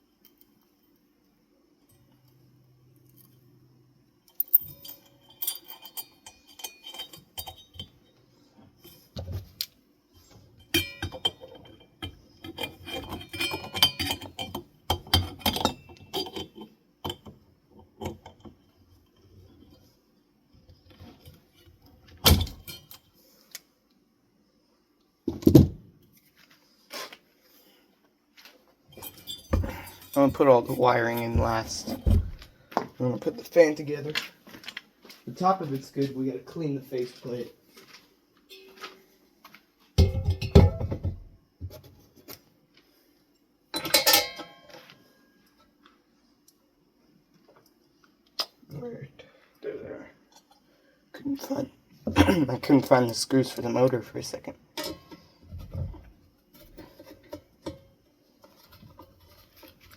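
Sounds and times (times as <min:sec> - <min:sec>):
metal parts clinking and rattling: 0:04.2 - 0:08.2, 0:08.8 - 0:17.3, 0:28.9 - 0:32.4, 0:43.7 - 0:45.0.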